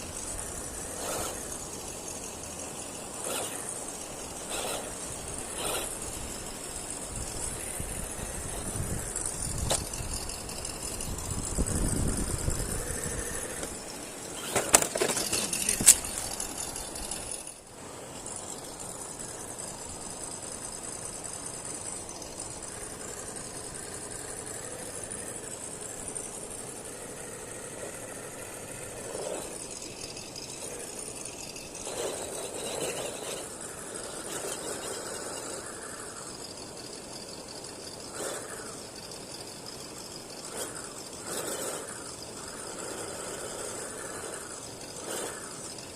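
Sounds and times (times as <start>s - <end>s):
toy car electric motor and gears: 0.0s - 45.9s.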